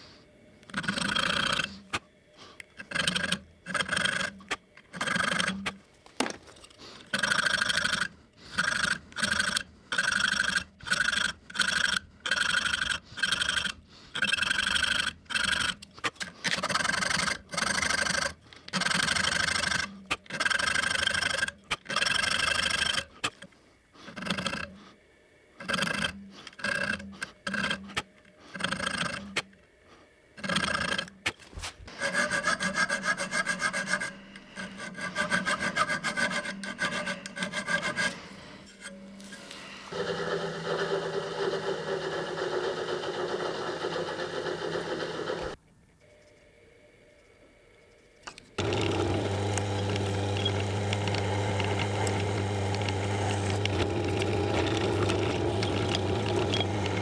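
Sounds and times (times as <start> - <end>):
file rasping on knife: 2.8 - 5.8, 7.0 - 23.4, 24.0 - 24.9, 25.6 - 29.5, 31.9 - 45.6, 48.6 - 57.0.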